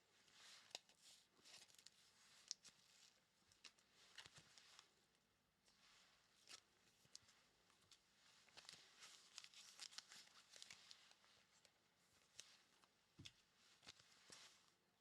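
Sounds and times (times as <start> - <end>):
plastic packaging crinkling and tearing: 8.5 - 11.2.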